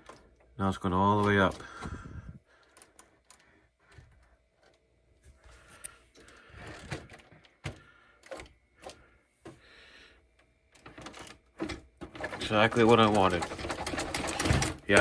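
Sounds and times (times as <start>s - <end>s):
toy truck suspension clicks and rattles: 10.8s - 15.0s.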